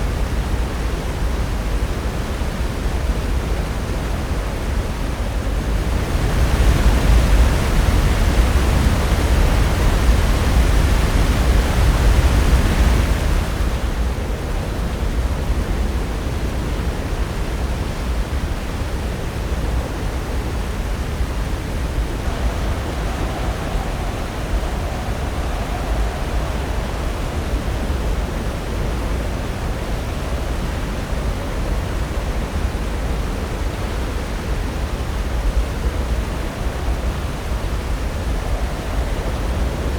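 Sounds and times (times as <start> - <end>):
ocean waves breaking: 21.1 - 33.6.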